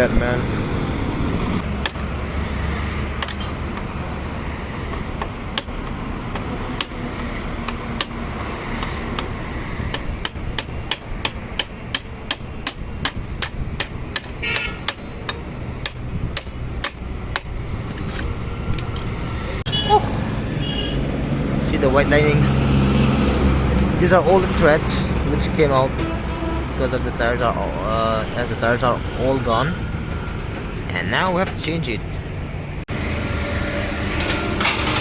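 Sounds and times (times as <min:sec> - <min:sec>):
hammer striking wheel: 0:01.6 - 0:02.4, 0:04.9 - 0:19.1.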